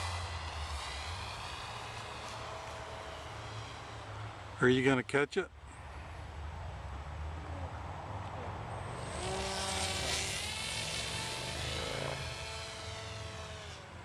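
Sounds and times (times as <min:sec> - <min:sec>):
model plane motor whining: 0:00.0 - 0:04.5, 0:08.9 - 0:14.0.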